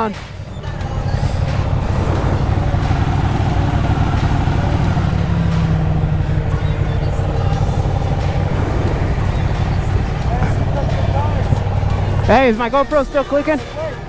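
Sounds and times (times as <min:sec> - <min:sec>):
motorcycle engine droning: 0:00.0 - 0:14.0.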